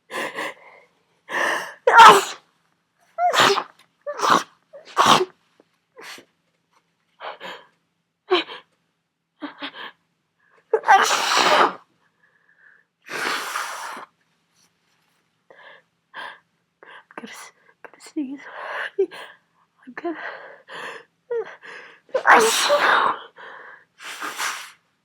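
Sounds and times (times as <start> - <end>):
person sneezing: 1.9 - 2.4, 3.2 - 5.3, 10.8 - 11.8, 22.2 - 23.1.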